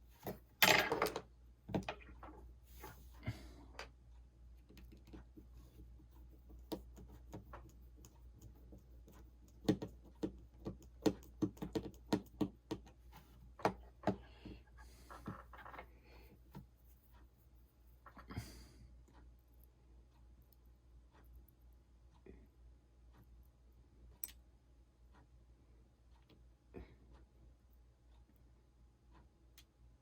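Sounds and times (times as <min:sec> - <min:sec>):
low steady hum: 0:12.6 - 0:30.0.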